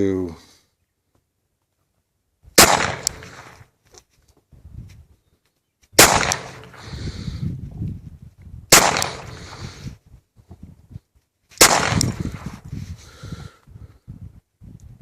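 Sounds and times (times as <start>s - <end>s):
pistol shots: 2.6s - 3.6s, 6.0s - 6.8s, 8.7s - 9.5s, 11.6s - 12.4s.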